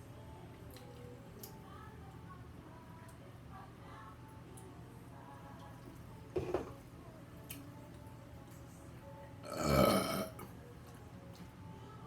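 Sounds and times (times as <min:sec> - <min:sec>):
woman burping: 0:09.4 - 0:10.4.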